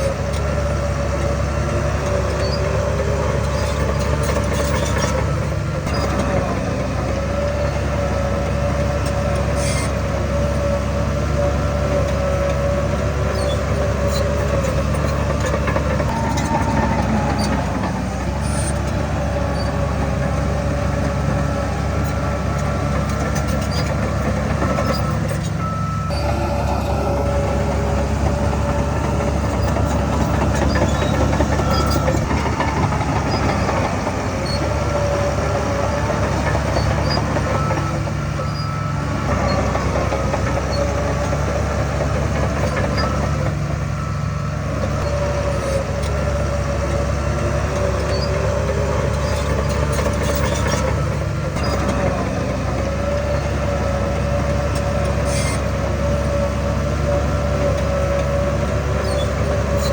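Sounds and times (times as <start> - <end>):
heavy machinery diesel engines rumbling: 0.0 - 59.9
steady high whine: 26.0 - 32.3.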